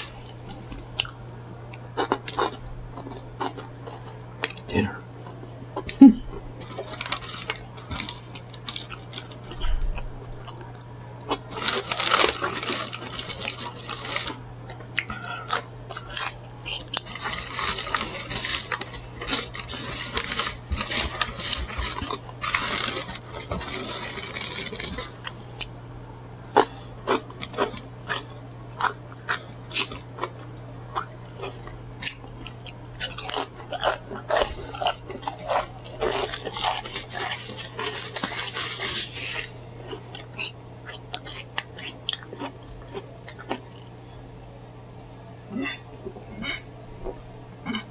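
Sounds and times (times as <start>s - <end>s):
crunchy bites and chewing: 0.0s - 43.9s
steady low hum: 0.0s - 47.9s
paper wrapper crinkling: 6.6s - 14.4s, 15.4s - 26.5s, 27.4s - 40.5s.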